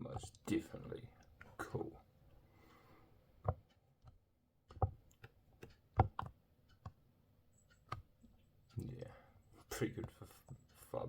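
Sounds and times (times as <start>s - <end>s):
hard plastic clicks: 3.4s - 7.0s, 7.7s - 8.1s.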